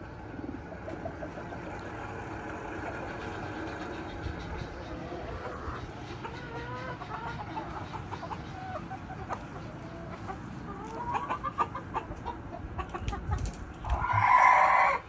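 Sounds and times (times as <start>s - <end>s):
chickens clucking: 0.0s - 15.0s
rising chicken calls: 2.9s - 13.1s, 13.8s - 15.0s.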